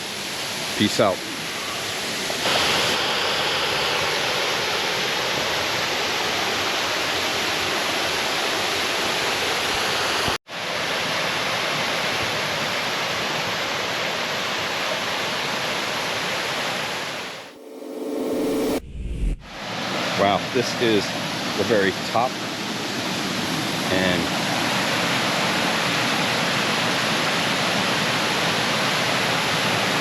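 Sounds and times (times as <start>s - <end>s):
waterfall roaring: 1.3s - 10.4s, 19.6s - 30.0s.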